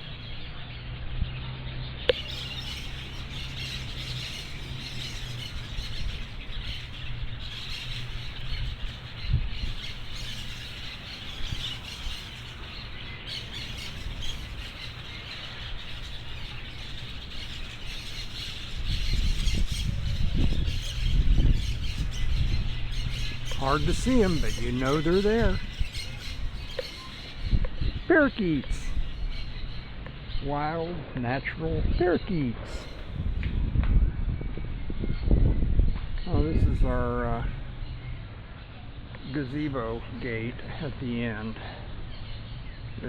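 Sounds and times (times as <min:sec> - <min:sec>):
parakeets calling: 0:02.0 - 0:30.9, 0:31.8 - 0:33.6.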